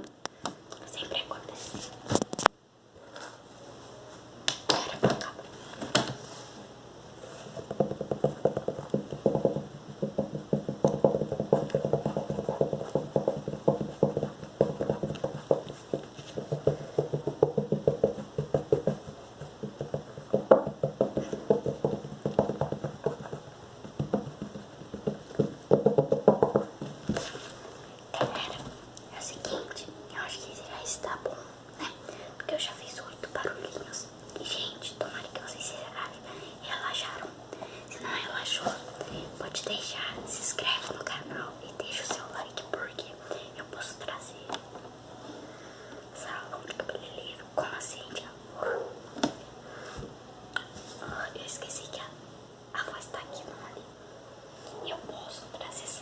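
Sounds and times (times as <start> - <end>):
fingers tapping book: 7.6 - 27.3.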